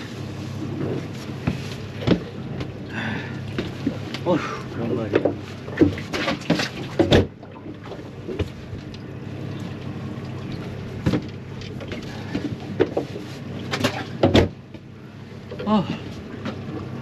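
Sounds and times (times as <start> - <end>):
boat engine humming: 0.0 - 17.0
knocks and clatters on deck: 1.4 - 2.7.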